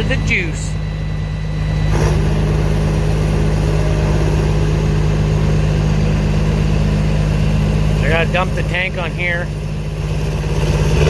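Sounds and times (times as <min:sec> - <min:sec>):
engine revving up: 0:10.1 - 0:11.0.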